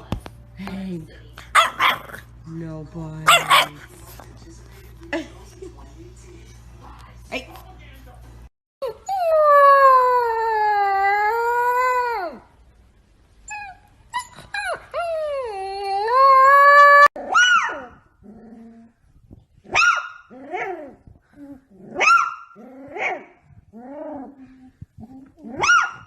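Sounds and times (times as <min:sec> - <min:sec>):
dog yelping whines: 0:25.6 - 0:26.0.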